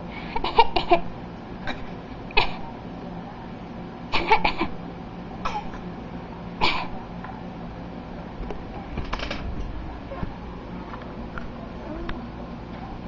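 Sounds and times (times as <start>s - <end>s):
short deliberate coughs: 5.4s - 5.8s, 6.6s - 7.0s.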